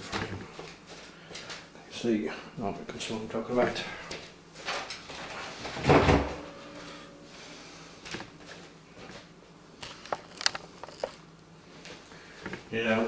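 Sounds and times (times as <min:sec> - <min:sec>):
cables rustling: 0:08.0 - 0:12.7.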